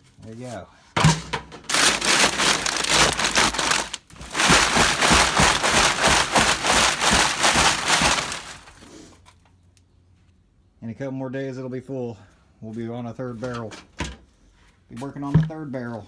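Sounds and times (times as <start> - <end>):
scrap cans pouring into metal drum: 1.0 - 9.0.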